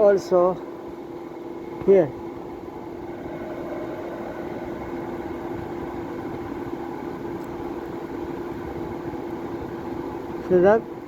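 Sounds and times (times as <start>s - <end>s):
machine hum: 0.0s - 11.0s.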